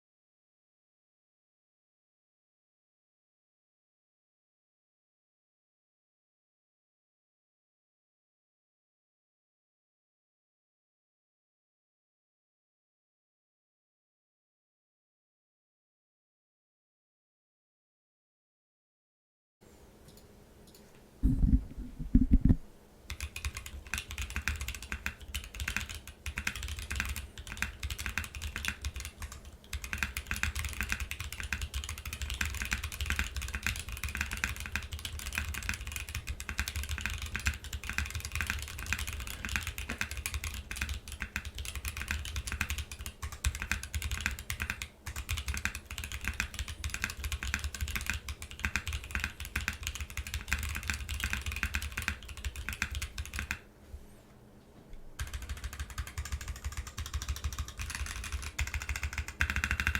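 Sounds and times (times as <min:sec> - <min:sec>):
low thumps: 0:21.2 - 0:22.7
mechanical keyboard typing: 0:21.8 - 0:53.6, 0:55.2 - 0:59.9.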